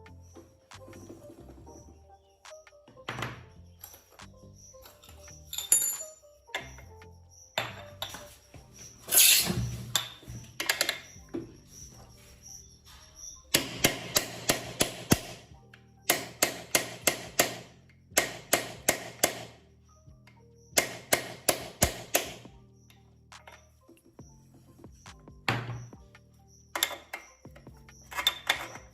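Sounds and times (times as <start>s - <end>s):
background music: 0.0s - 28.9s
hammer tapping metal: 13.5s - 15.4s, 16.1s - 19.5s, 20.8s - 22.4s.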